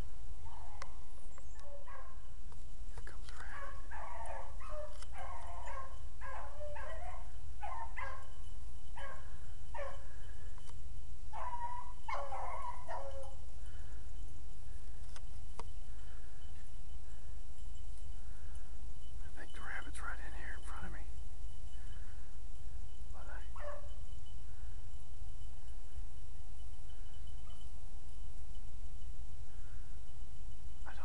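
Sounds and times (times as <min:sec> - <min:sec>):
hounds baying: 0:00.4 - 0:02.3, 0:03.4 - 0:10.6, 0:11.3 - 0:14.1, 0:21.6 - 0:24.9, 0:26.8 - 0:27.8.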